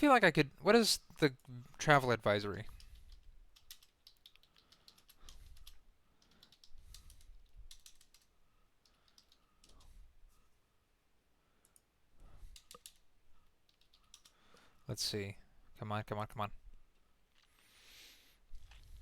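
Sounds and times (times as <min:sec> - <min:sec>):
faint keyboard typing: 0:01.2 - 0:10.1, 0:11.5 - 0:14.9.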